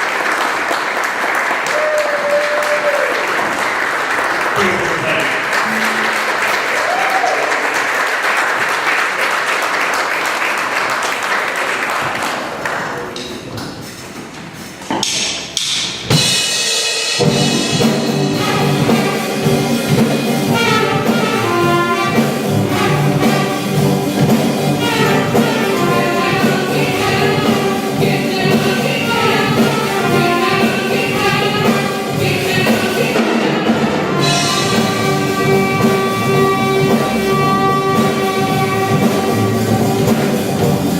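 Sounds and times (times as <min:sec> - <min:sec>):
audience applause: 0:00.0 - 0:13.2
live band with horns: 0:01.6 - 0:08.4, 0:15.6 - 0:40.9.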